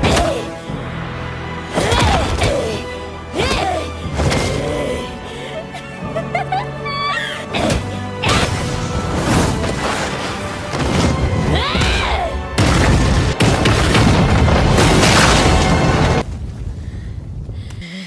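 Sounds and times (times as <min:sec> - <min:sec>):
dramatic music: 0:00.0 - 0:16.3
heavy booms and crashing impacts: 0:12.5 - 0:17.5.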